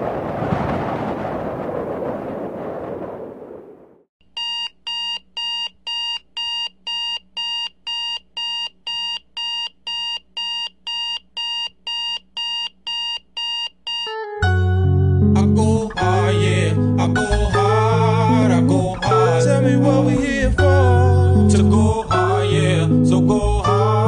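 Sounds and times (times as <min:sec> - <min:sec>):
alarm clock beeping: 0:04.4 - 0:14.2.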